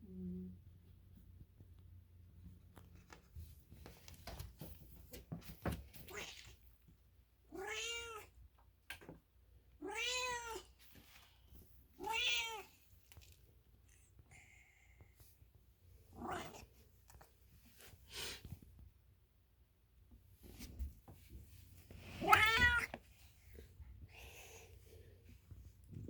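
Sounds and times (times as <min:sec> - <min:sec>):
soft clicks and rustles: 0:01.0 - 0:07.0, 0:12.8 - 0:14.2
cat meowing: 0:07.5 - 0:08.3, 0:09.8 - 0:10.6, 0:12.0 - 0:12.7, 0:22.2 - 0:23.0.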